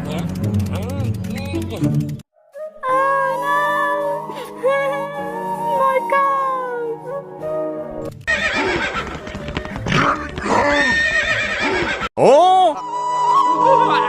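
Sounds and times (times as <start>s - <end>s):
background music: 0.0s - 11.0s, 12.2s - 14.0s
horse neighing: 8.3s - 9.2s, 9.8s - 12.1s.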